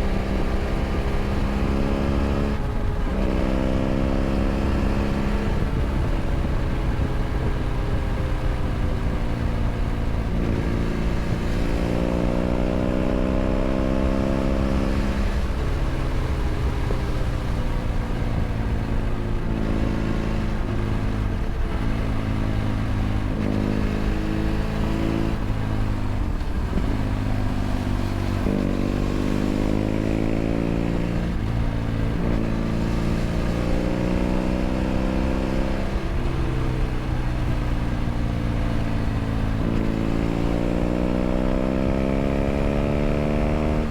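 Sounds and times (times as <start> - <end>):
motorcycle engine revving: 8.2 - 17.1, 18.0 - 43.9.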